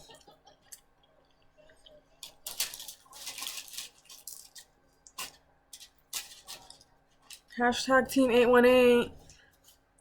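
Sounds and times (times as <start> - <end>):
crackly chewing: 0.2 - 7.6.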